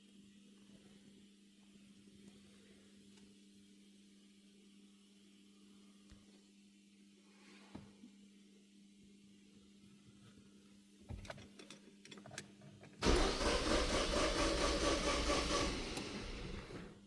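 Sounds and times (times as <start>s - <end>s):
car engine cranking on starter: 13.0s - 17.0s.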